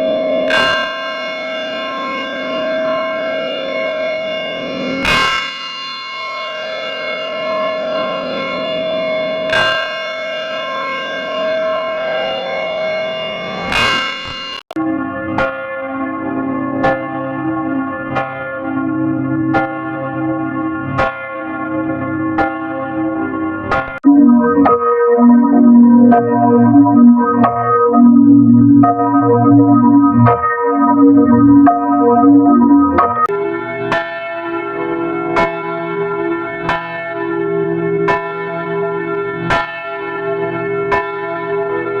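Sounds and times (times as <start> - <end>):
bells ringing: 0.0 - 23.6, 33.2 - 42.0
church bell tolling: 0.0 - 42.0.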